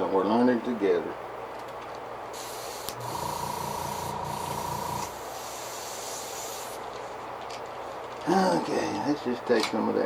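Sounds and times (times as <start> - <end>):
airbrush hissing: 2.4 - 6.8
steady whine: 2.4 - 7.2.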